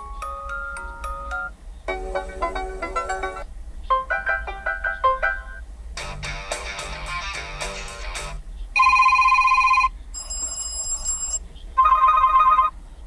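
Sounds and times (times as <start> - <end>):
phone ringtone melody: 0.0 - 5.6, 8.8 - 12.7
steady ringing beep: 8.8 - 12.7.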